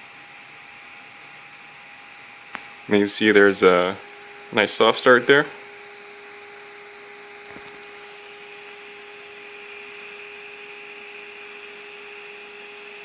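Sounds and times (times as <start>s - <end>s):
cooling fan whirring: 0.0s - 13.0s.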